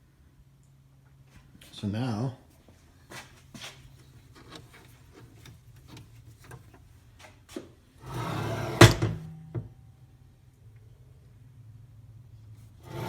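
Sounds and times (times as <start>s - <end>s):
saw deck sliding rumble: 8.0s - 9.8s, 12.7s - 13.0s.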